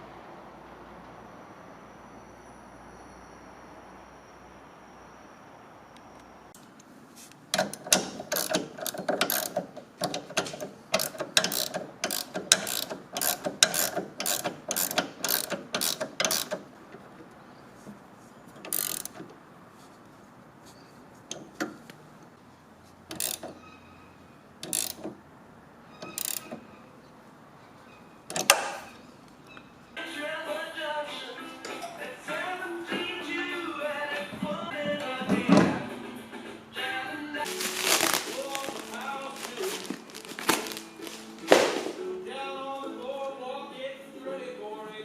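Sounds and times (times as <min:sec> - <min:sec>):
ratchet mechanism clicking: 0:07.6 - 0:16.7, 0:18.6 - 0:19.3, 0:23.1 - 0:23.6, 0:24.6 - 0:25.2, 0:26.0 - 0:26.6.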